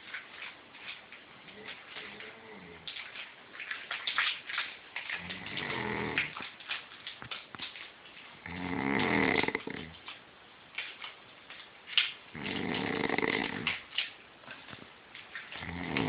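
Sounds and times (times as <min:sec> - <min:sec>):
dog snoring: 0:01.5 - 0:02.9, 0:05.2 - 0:06.4, 0:08.4 - 0:10.0, 0:12.3 - 0:13.8, 0:15.6 - 0:16.0.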